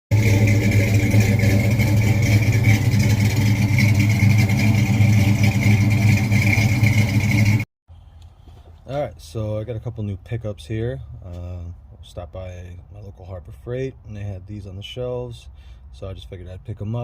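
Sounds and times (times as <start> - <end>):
engine running steadily: 0.1 - 8.8.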